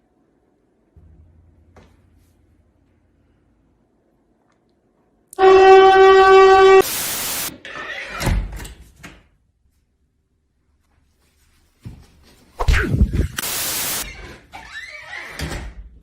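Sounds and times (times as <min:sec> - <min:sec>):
steady horn-like tone: 0:05.4 - 0:07.5
short burst of hiss: 0:06.8 - 0:07.5, 0:12.9 - 0:14.0.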